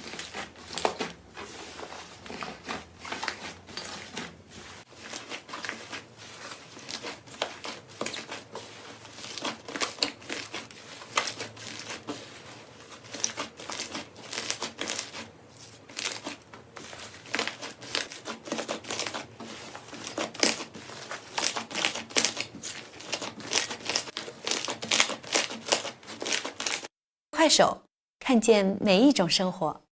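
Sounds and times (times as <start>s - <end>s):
slime crackling and popping: 12.9s - 15.2s.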